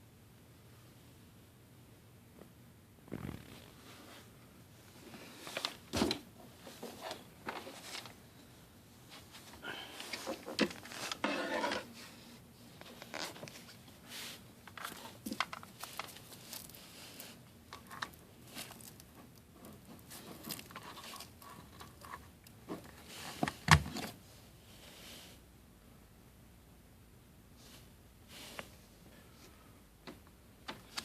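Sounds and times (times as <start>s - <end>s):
rustling: 3.0s - 25.4s.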